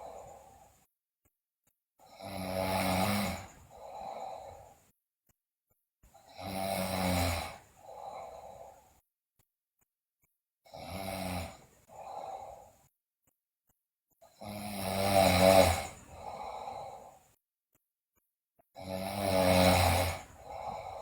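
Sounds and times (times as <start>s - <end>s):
soft breath: 0.0s - 0.9s, 3.3s - 5.0s, 7.5s - 9.0s, 11.6s - 12.9s, 15.7s - 17.4s, 20.0s - 21.0s
girl snoring loudly: 2.0s - 4.7s, 6.2s - 8.8s, 10.7s - 12.8s, 14.4s - 17.3s, 18.8s - 21.0s.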